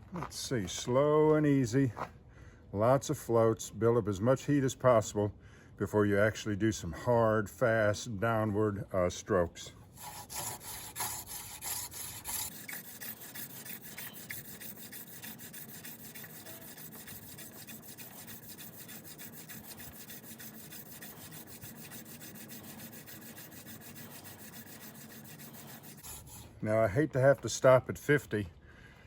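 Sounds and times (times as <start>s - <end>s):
hand drill rubbing on wood: 10.0s - 26.6s.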